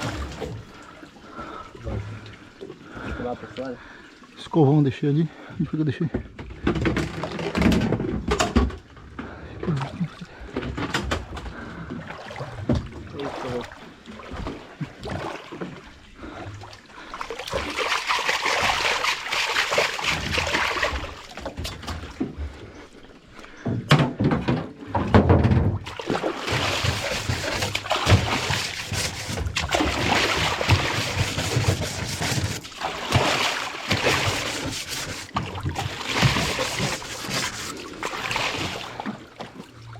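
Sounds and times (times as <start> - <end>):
water splashing: 0.0 - 5.4, 9.6 - 23.6, 25.8 - 39.9
scrubbing: 17.4 - 21.3, 25.9 - 39.2.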